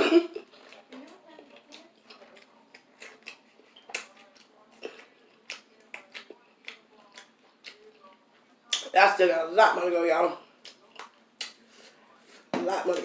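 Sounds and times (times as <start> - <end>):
chewing with wet mouth clicks: 0.5 - 8.9, 10.6 - 11.6.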